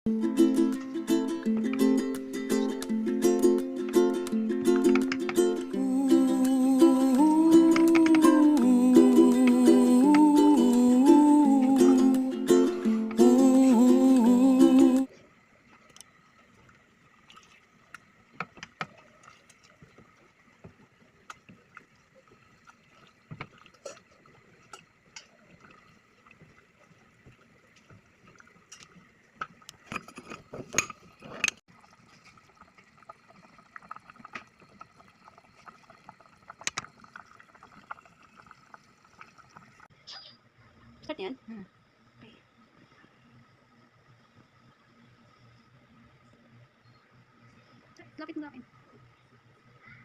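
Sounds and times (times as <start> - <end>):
ukulele music: 0.1 - 15.1
liquid bubbling: 0.1 - 39.9
faint steady hum: 0.1 - 50.0
kitchen clinks and knocks: 29.8 - 31.6.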